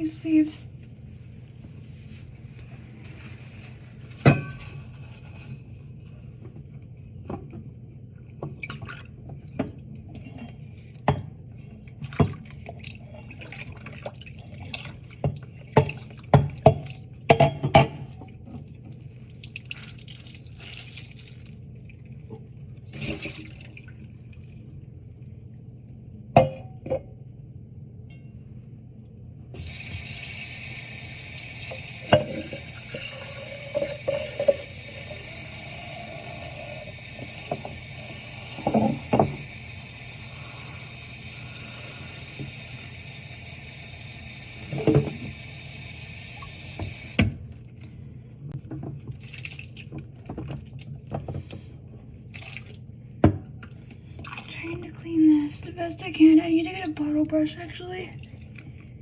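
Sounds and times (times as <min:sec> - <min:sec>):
dishes and glassware clinking: 0:04.2 - 0:04.8
tap water running: 0:29.6 - 0:47.4.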